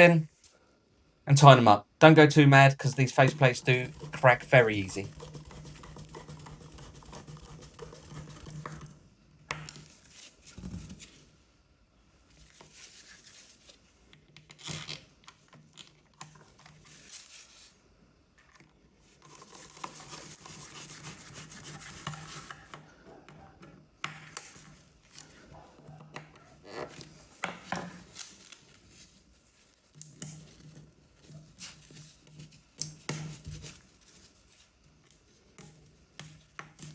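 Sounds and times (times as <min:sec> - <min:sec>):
screwdriver rubbing and scraping: 0:02.8 - 0:08.9.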